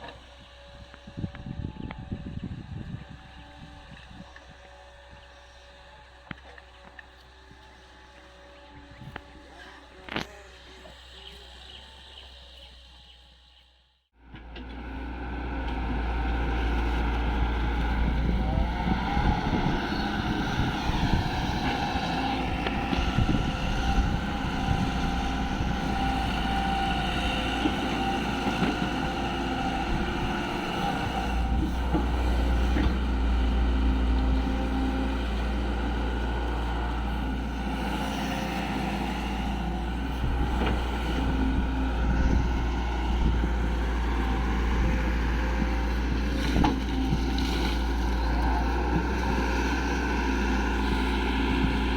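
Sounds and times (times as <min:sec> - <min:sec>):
wind rumbling on microphone: 0:00.3 - 0:05.3, 0:15.8 - 0:51.9
excavator diesel engine running: 0:14.2 - 0:51.9.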